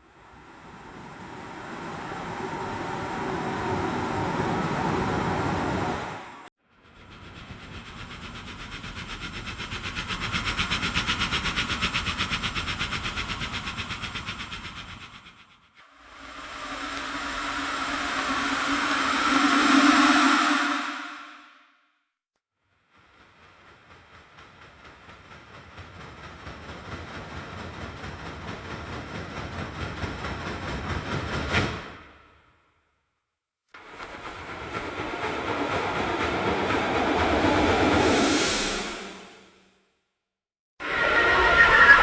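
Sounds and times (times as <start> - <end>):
train passing rhythmic pulsing: 0.0 - 21.5, 22.8 - 32.2, 33.8 - 39.5.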